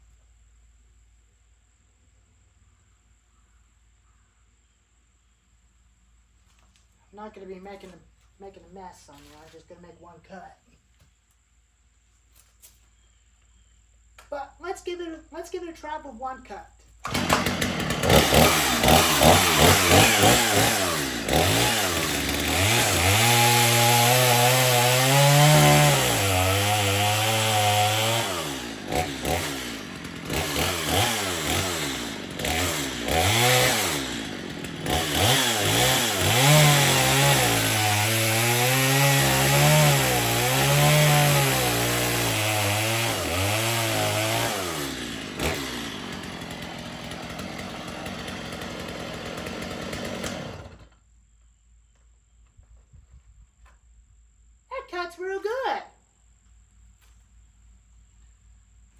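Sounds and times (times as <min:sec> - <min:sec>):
chainsaw cutting log: 0:16.9 - 0:51.0.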